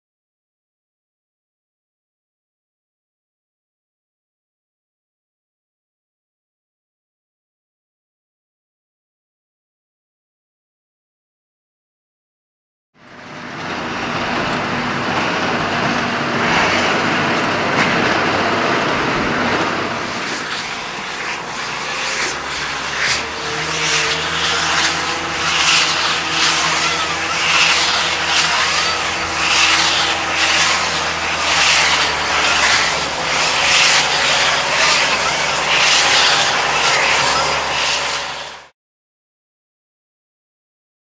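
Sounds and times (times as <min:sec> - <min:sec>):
baler machine noise: 0:13.0 - 0:38.7
tractor engine drone: 0:13.0 - 0:38.7
regular baler beat: 0:13.5 - 0:38.6.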